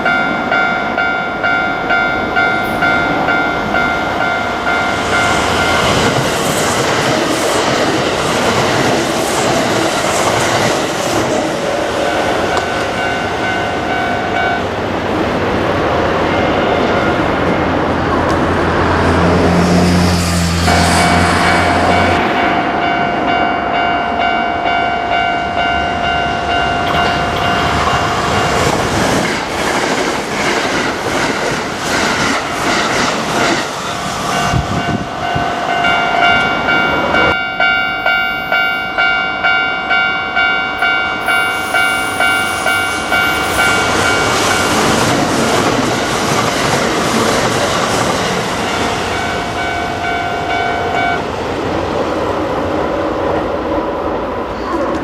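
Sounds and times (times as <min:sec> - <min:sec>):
level crossing bell ringing: 0:00.0 - 0:05.9, 0:12.1 - 0:14.6, 0:21.0 - 0:28.7, 0:34.3 - 0:44.8, 0:48.7 - 0:51.2.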